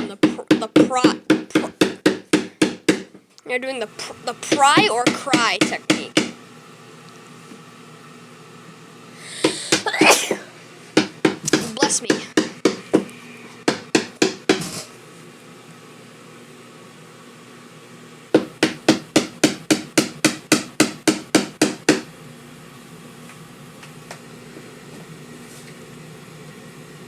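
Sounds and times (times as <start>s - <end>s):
rapid hammer blows on wood: 0.0s - 3.2s, 4.4s - 6.4s, 11.0s - 14.8s, 18.4s - 22.1s.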